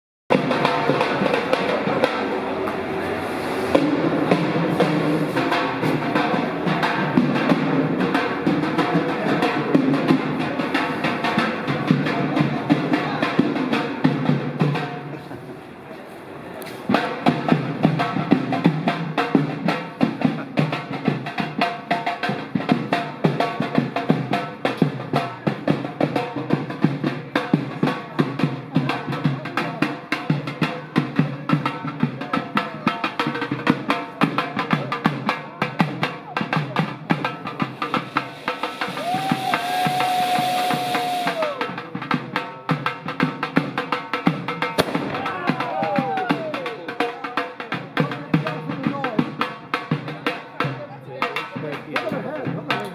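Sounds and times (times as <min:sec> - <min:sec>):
loud drum strikes: 0:00.3 - 0:15.2, 0:16.9 - 0:52.9
live music: 0:35.2 - 0:52.9.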